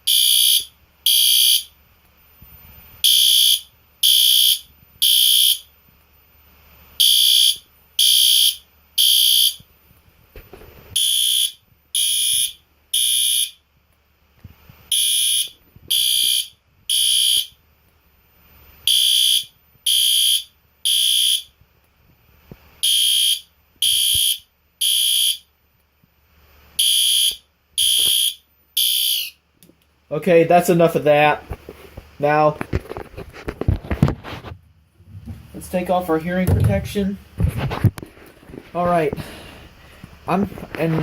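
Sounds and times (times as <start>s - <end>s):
fire alarm horn blasts: 0.0s - 1.7s, 3.0s - 5.7s, 7.0s - 9.6s, 11.0s - 13.6s, 14.9s - 17.6s, 18.9s - 21.6s, 22.8s - 25.5s, 26.8s - 29.4s.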